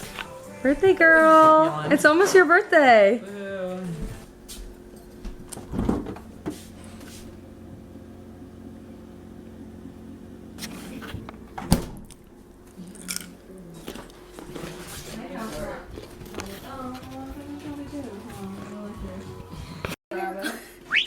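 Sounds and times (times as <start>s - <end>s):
low hum: 4.2s - 14.6s.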